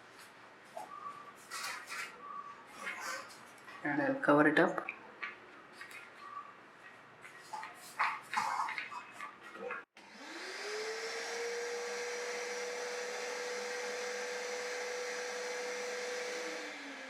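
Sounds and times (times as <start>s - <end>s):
vacuum cleaner motor whine: 10.0s - 17.0s.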